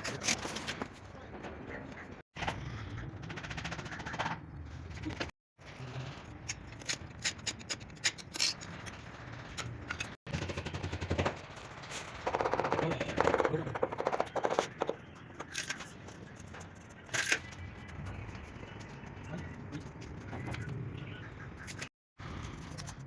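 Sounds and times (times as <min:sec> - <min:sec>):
sharp taps and knocks on tiles: 0:12.3 - 0:15.5.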